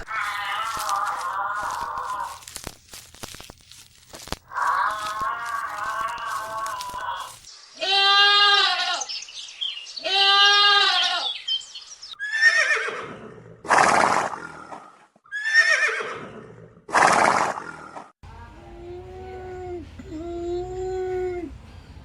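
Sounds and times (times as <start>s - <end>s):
farm animals calling: 0.0s - 2.6s, 4.4s - 12.9s
harsh rough animal cries: 0.0s - 2.6s, 4.4s - 9.1s.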